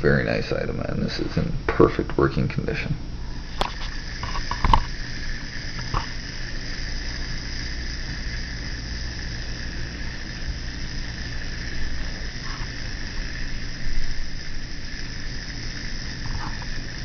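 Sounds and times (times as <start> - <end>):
steady hiss: 0.0 - 17.0
plastic wind-up toy clicks: 3.6 - 17.0.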